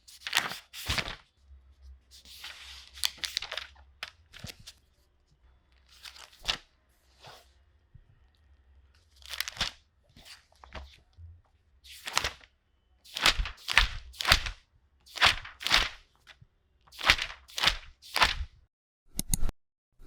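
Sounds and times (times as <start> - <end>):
paper pages turning: 0.1 - 1.3, 2.1 - 4.8, 5.8 - 7.6, 9.0 - 11.0, 11.9 - 12.5, 13.1 - 18.5.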